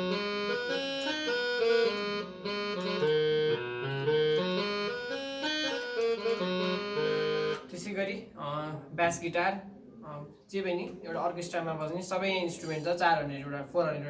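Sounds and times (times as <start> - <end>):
keyboard brass tune: 0.0 - 7.7.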